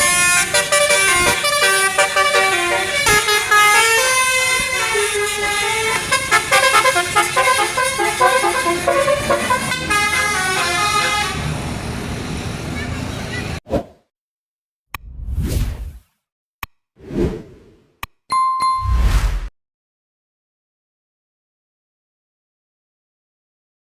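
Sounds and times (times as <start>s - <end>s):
bus musical horn melody: 0.0s - 12.0s
low rumble of bus and road: 0.0s - 13.6s.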